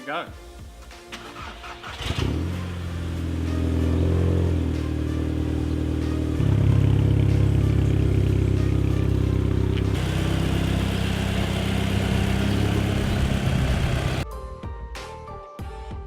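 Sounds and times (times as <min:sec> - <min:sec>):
car engine running at low revs: 0:02.2 - 0:14.2.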